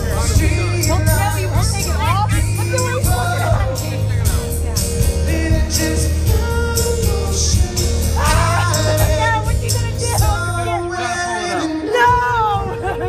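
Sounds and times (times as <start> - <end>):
music with singing and bass beat: 0.0 - 13.0.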